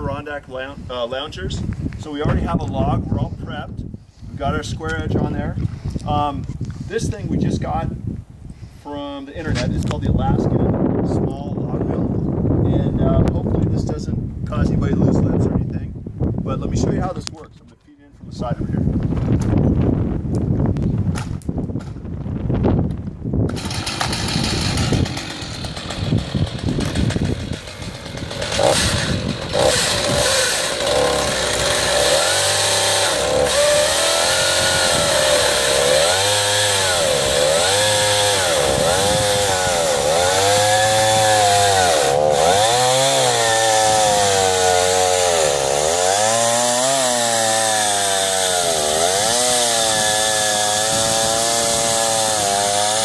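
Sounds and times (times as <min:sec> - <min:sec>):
chainsaw ripping through log: 0:23.5 - 0:53.0.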